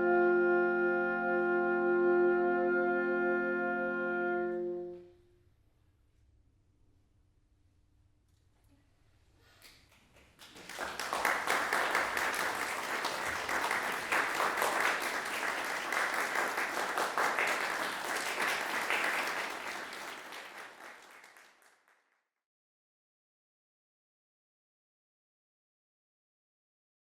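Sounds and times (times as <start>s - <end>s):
audience applauding: 10.2s - 22.0s.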